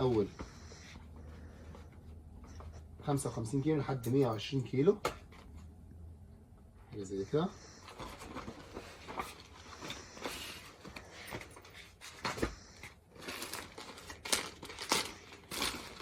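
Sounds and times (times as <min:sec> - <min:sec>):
clothes crinkling and rustling: 0:07.9 - 0:16.0.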